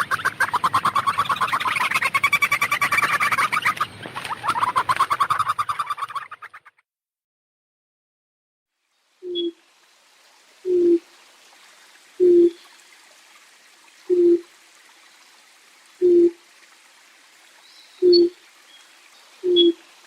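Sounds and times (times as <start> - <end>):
faint background hiss: 8.7 - 20.0
faint high chirp: 9.2 - 9.6, 17.7 - 18.4, 19.4 - 19.8
bird hooting low: 10.7 - 11.0, 12.2 - 12.6, 14.1 - 14.5, 16.0 - 16.4, 18.0 - 18.4, 19.4 - 19.8.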